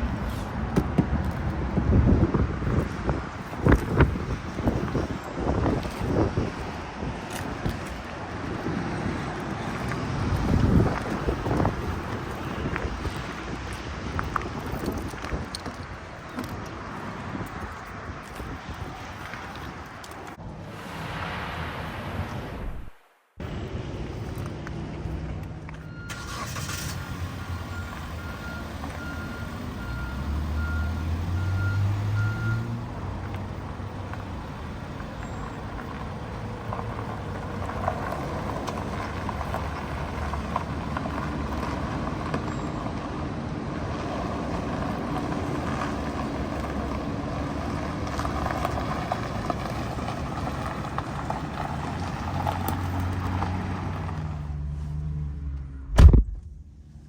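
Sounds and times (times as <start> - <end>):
road noise: 0.0 - 57.0
car engine accelerating: 26.1 - 56.2.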